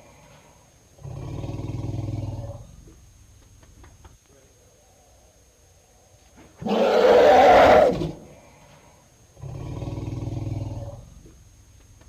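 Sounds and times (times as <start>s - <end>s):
elephant roaring: 6.6s - 8.2s.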